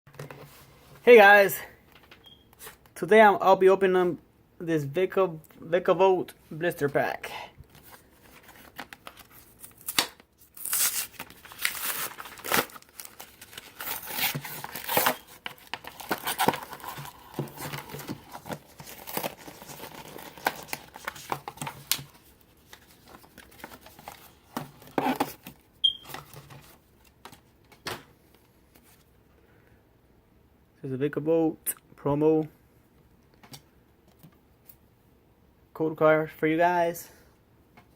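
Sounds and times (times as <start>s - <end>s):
packaging tearing and crinkling: 8.4s - 25.4s.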